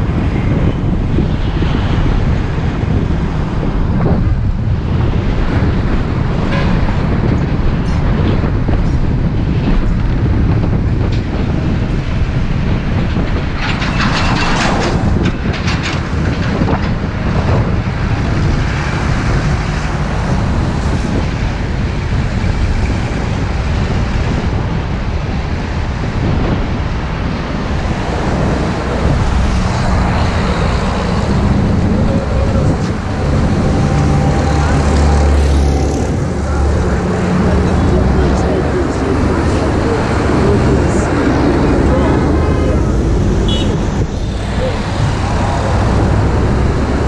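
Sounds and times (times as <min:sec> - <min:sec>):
bus body rattling: 0:00.0 - 0:25.4, 0:26.5 - 0:47.0
bus engine and road rumble: 0:00.0 - 0:47.0
clattering: 0:13.6 - 0:17.0.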